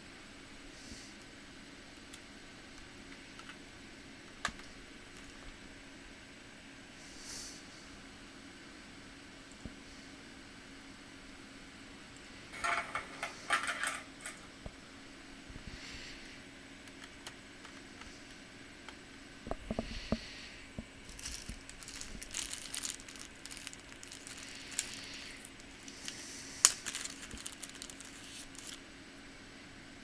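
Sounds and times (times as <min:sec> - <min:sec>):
clicks and knocks of plastic parts: 0:12.6 - 0:14.4.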